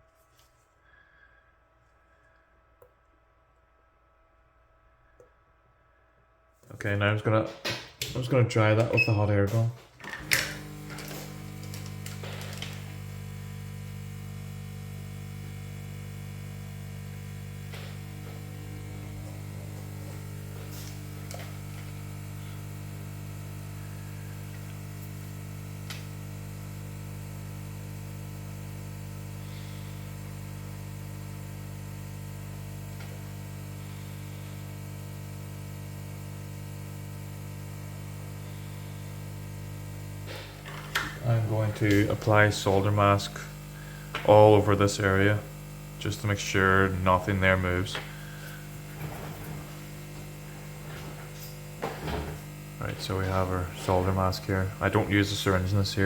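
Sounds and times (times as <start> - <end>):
hot air gun blowing: 10.1 - 26.3, 29.1 - 30.4.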